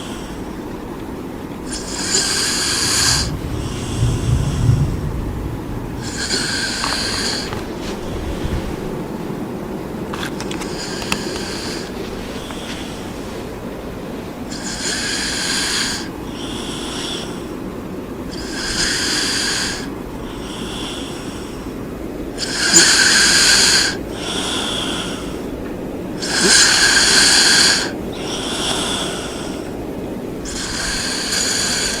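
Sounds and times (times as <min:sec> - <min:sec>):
person snoring: 0:01.7 - 0:05.2, 0:06.0 - 0:07.9, 0:10.2 - 0:13.0, 0:14.5 - 0:17.5, 0:18.3 - 0:21.7, 0:22.4 - 0:25.5, 0:26.2 - 0:29.8, 0:30.4 - 0:32.0.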